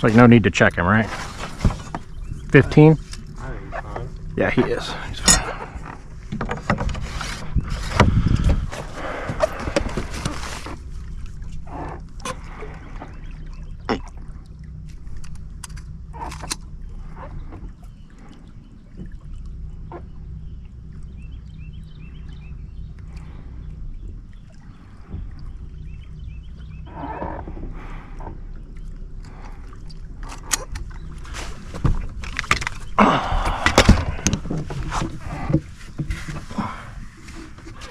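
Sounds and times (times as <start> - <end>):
steady low hum: 0.0 - 37.9.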